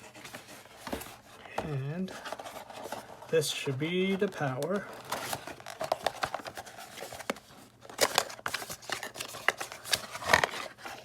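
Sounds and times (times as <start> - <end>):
packaging crackling and clicking: 4.1 - 11.0.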